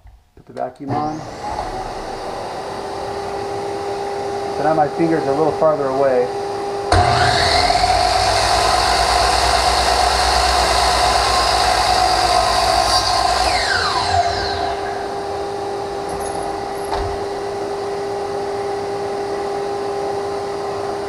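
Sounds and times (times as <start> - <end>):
shop vacuum humming: 0.8 - 21.0
saw motor winding down: 0.9 - 5.8, 6.9 - 16.9
miter saw cutting: 6.9 - 16.9.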